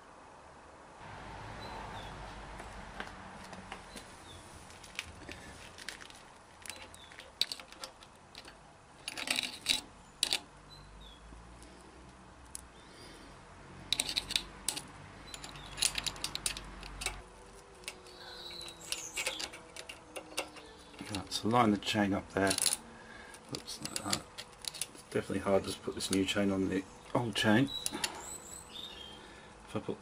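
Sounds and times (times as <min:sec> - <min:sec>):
metal chain links clinking: 0:06.7 - 0:10.5, 0:13.8 - 0:21.4, 0:22.3 - 0:22.8, 0:23.4 - 0:25.1.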